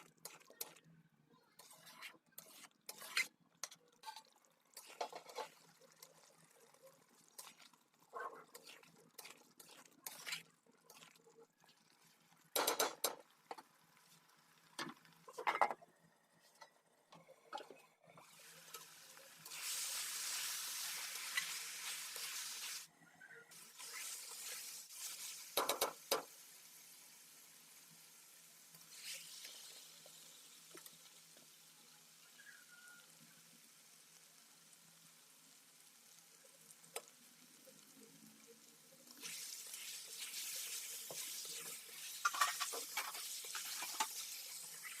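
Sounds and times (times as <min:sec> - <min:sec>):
food sizzling in a pan: 0:00.0 - 0:15.6, 0:17.6 - 0:45.0
utensil scraping a pan: 0:01.6 - 0:04.2, 0:41.1 - 0:45.0.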